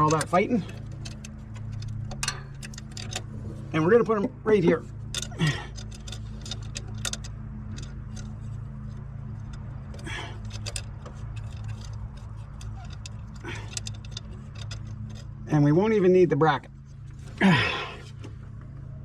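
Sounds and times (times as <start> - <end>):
metallic clicks of bolts and washers: 0.0 - 3.3, 4.0 - 15.4.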